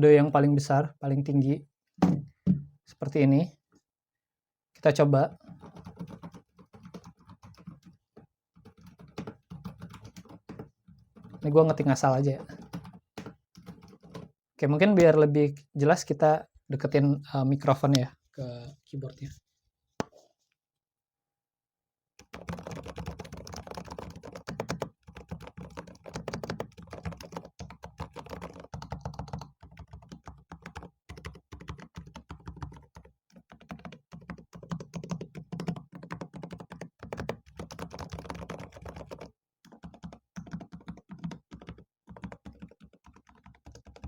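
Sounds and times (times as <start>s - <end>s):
mechanical keyboard typing: 5.5s - 7.9s, 8.6s - 14.3s, 22.2s - 44.0s.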